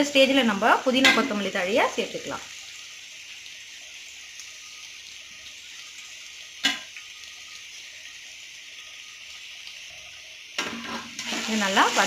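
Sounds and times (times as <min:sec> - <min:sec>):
onions sizzling in hot oil: 0:00.0 - 0:12.0.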